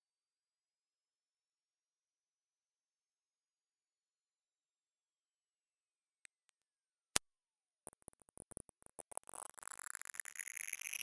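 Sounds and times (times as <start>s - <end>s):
buzzing electronic tone: 1.4s - 11.0s.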